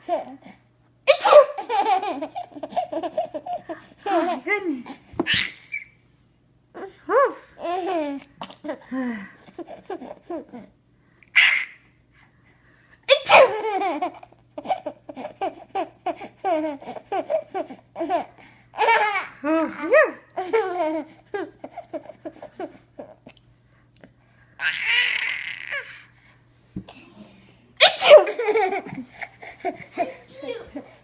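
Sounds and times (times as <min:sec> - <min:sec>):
sneeze: 0:01.1 - 0:01.6, 0:11.4 - 0:11.8, 0:13.1 - 0:13.6, 0:27.8 - 0:28.4
child laughing: 0:01.5 - 0:04.5, 0:05.3 - 0:05.9, 0:27.8 - 0:31.0.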